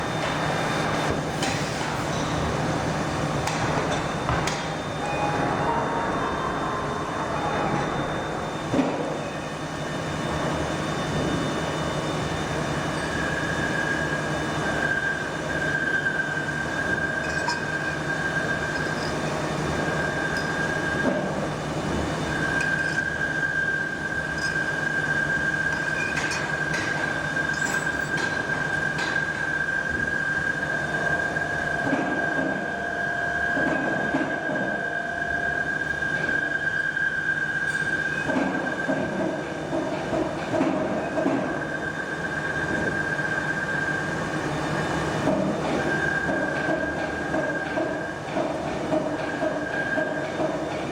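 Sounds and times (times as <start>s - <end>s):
low machinery hum: 0.0s - 36.4s
high-pitched machinery whine: 0.0s - 50.5s.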